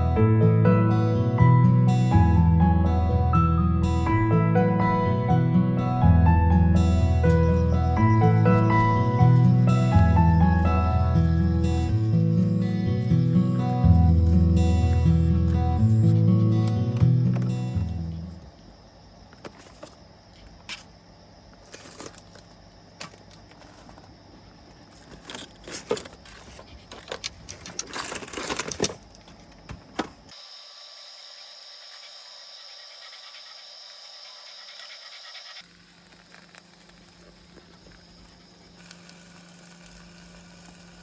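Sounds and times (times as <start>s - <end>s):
small objects clicking and knocking: 24.9s - 29.6s.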